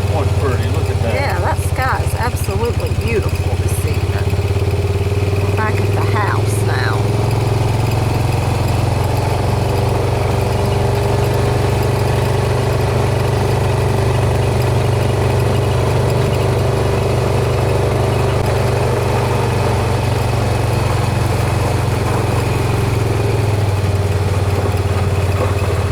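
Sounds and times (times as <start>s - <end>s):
vehicle engine droning: 0.0s - 25.9s.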